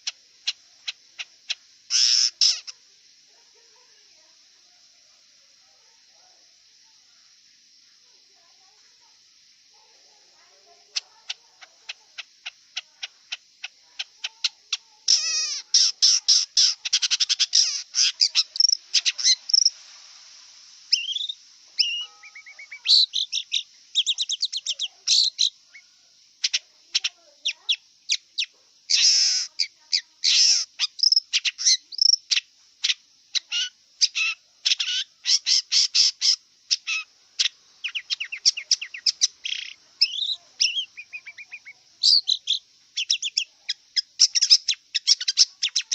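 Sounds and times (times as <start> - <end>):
bird singing with chattering trills: 10.9 - 19.7, 20.9 - 45.9.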